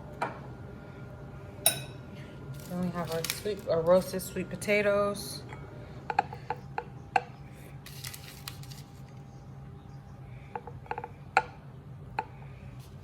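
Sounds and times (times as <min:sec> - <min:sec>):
low steady hum: 0:00.0 - 0:13.0
utensil clinking against bowl: 0:01.7 - 0:02.0.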